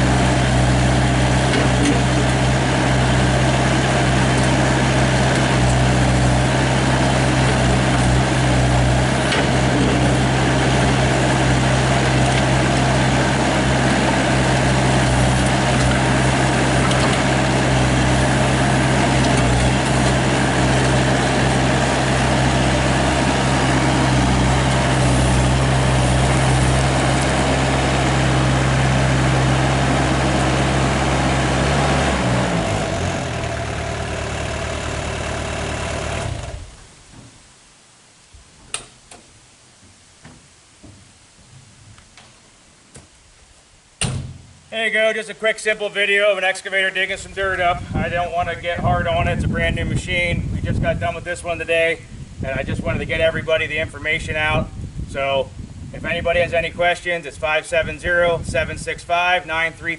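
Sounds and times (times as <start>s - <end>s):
excavator engine running: 0.0s - 37.1s.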